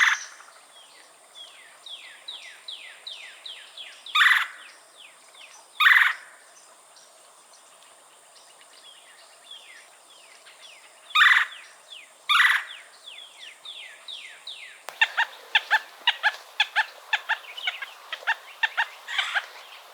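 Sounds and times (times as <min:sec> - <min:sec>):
rapid squeaky bird notes: 0:14.9 - 0:19.9
woodpecker churr call: 0:14.9 - 0:19.9.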